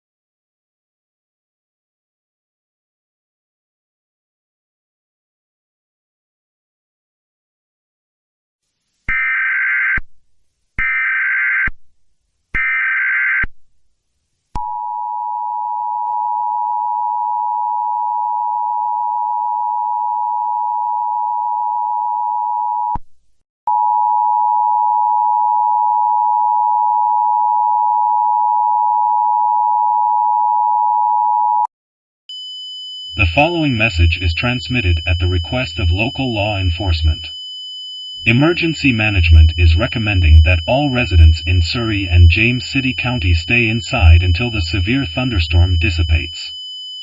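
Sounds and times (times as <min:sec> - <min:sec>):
two-tone attention signal: 0:32.3 - 0:37.3, 0:38.2 - 0:46.5
header data bursts: 0:33.2 - 0:37.3, 0:38.2 - 0:46.5.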